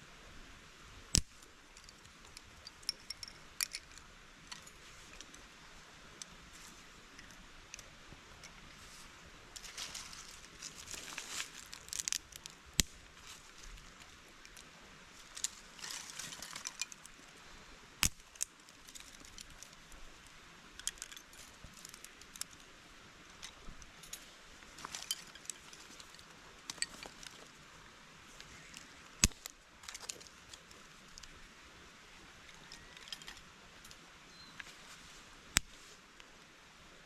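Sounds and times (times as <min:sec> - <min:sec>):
small objects clicking and clinking: 0:01.2 - 0:05.4, 0:09.6 - 0:13.0, 0:15.3 - 0:17.1, 0:23.4 - 0:27.5.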